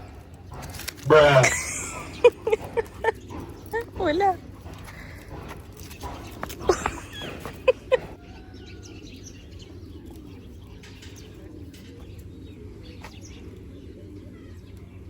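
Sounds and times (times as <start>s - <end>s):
birds cooing: 0.0s - 15.0s.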